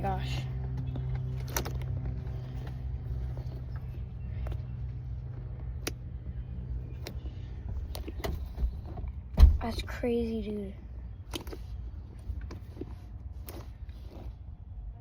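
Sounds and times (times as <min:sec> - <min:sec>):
low hum: 0:00.0 - 0:15.0.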